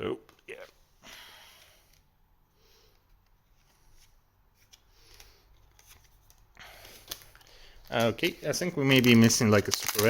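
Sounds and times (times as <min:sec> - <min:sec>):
trading cards sliding and flipping: 0:02.8 - 0:10.0.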